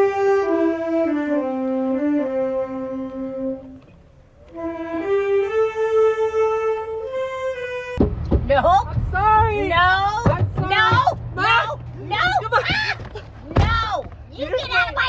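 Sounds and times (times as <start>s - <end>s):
brass horn playing held notes: 0.0s - 3.8s.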